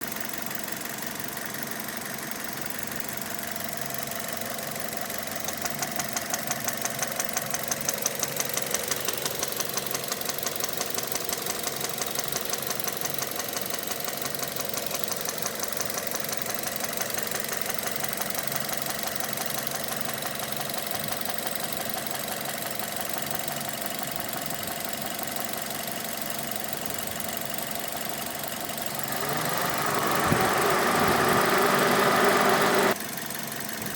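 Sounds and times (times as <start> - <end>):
engine running with rhythmic knock: 0.0 - 33.9.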